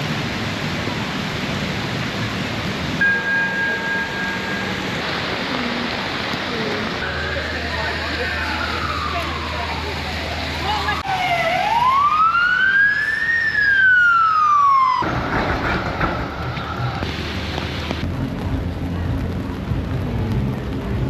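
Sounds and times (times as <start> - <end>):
rainy city street noise: 0.0 - 21.0
emergency vehicle siren wailing: 6.8 - 15.6
low rumble: 15.0 - 21.0.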